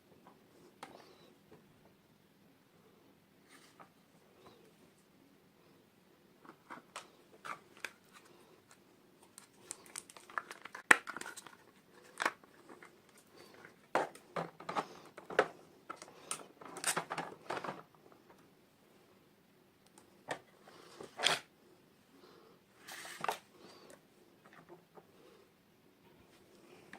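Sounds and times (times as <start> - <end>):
plastic packaging crinkling: 9.3 - 13.8.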